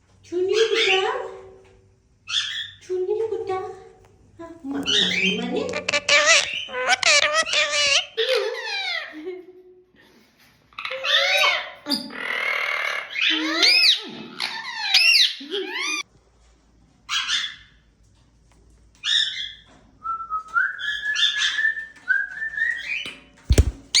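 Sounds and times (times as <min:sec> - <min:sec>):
parrot rasping calls: 0:04.9 - 0:09.0.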